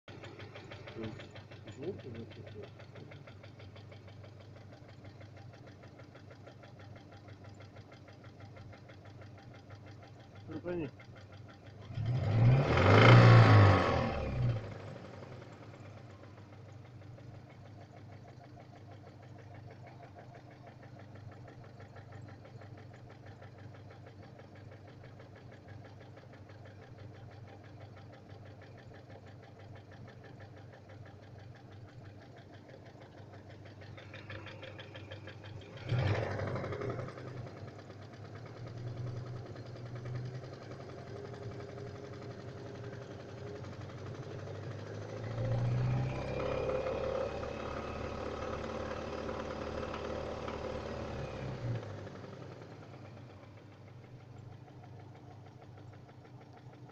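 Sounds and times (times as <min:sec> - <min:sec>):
engine idling with rapid knock: 0:00.0 - 0:56.9
engine revving: 0:00.2 - 0:03.4, 0:11.7 - 0:16.4, 0:33.9 - 0:53.2.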